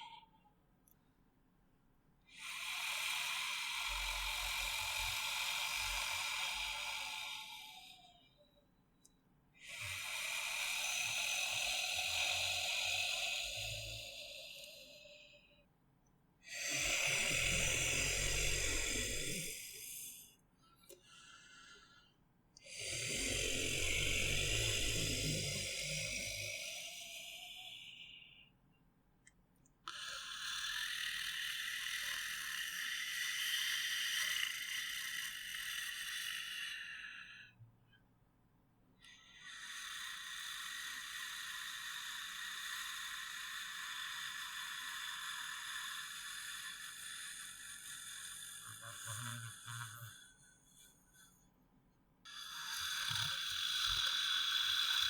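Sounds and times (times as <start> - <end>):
monster breathing hiss: 2.4 - 8.2, 9.7 - 15.2, 16.5 - 20.3, 22.7 - 28.2, 29.9 - 37.5, 39.3 - 50.4, 52.3 - 55.0
monster breathing with growl: 16.6 - 20.3, 22.7 - 27.7.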